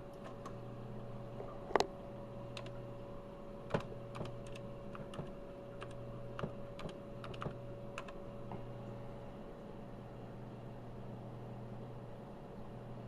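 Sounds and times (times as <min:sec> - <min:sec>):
computer electrical hum: 0:00.0 - 0:13.0
keyboard key clicks: 0:03.7 - 0:08.1.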